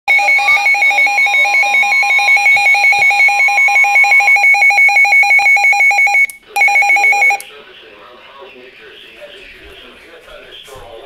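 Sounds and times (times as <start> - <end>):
rapid electronic alarm beeping: 0.1 - 7.4.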